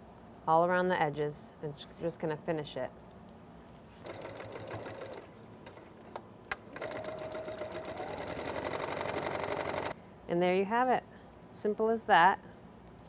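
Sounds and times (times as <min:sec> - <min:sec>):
sewing machine stitching: 0:04.0 - 0:10.0.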